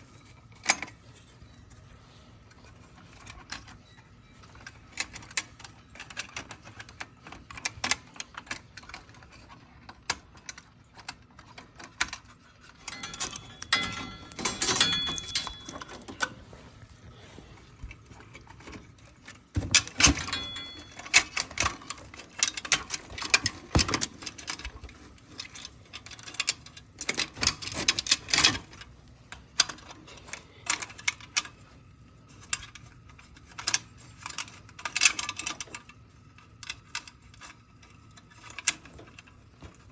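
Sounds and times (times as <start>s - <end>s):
small metal tools clinking: 12.6s - 16.5s, 19.6s - 28.6s.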